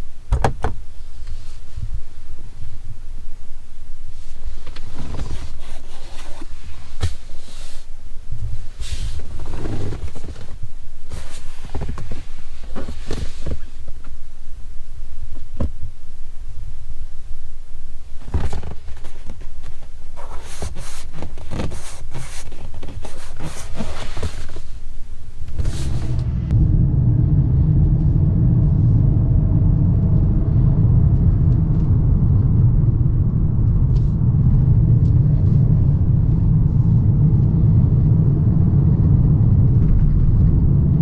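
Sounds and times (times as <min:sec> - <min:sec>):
pickup truck rumbling: 0:25.3 - 0:41.0.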